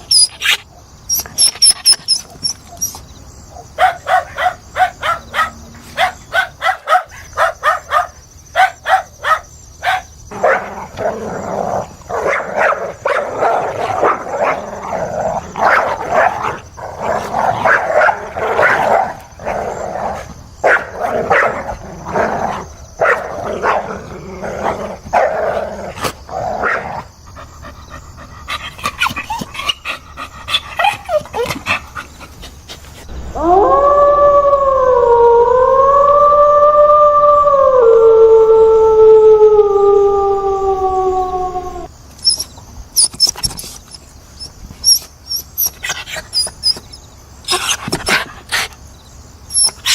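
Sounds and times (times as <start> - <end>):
dog whining: 0.0 - 3.0, 40.7 - 48.2, 49.5 - 49.9
dog barking: 3.5 - 11.0, 12.1 - 14.8, 15.6 - 16.6, 17.2 - 19.2, 20.2 - 21.7, 23.0 - 24.0
dog howling: 33.2 - 41.9.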